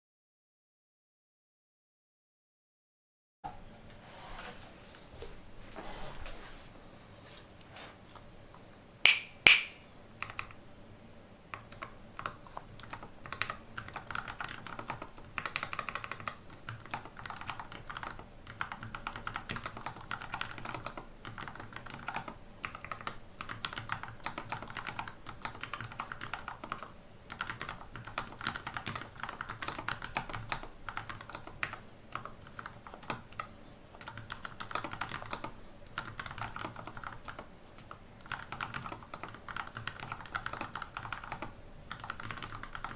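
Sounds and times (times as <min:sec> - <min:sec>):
mechanical keyboard typing: 0:10.2 - 0:10.6, 0:11.5 - 0:42.9.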